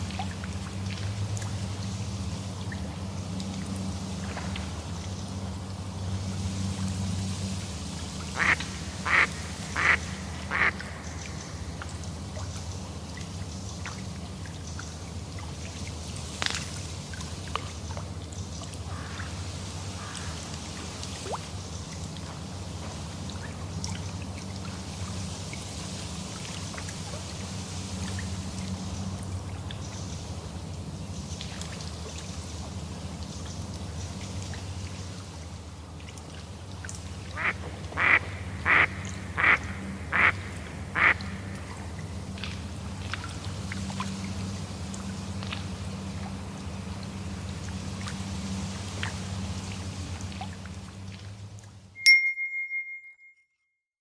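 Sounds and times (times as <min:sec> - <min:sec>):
small waves lapping: 0:00.0 - 0:51.8
duck quacking: 0:08.4 - 0:10.8, 0:37.4 - 0:40.4, 0:41.0 - 0:41.2.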